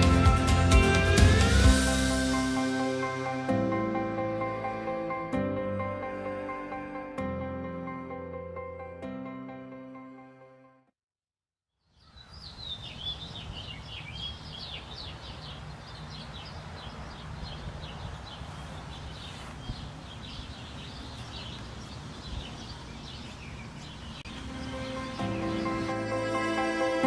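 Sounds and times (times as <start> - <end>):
small birds chirping: 11.7 - 26.7.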